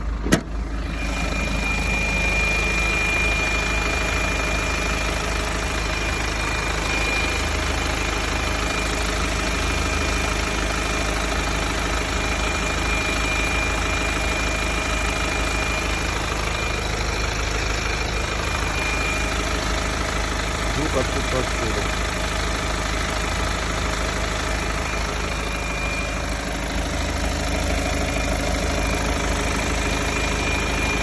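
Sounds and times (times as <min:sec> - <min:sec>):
diesel engine idling: 0:00.0 - 0:31.0
high-pitched whistle: 0:00.8 - 0:05.1, 0:05.8 - 0:08.0, 0:12.3 - 0:17.3, 0:17.9 - 0:19.5, 0:24.8 - 0:26.5.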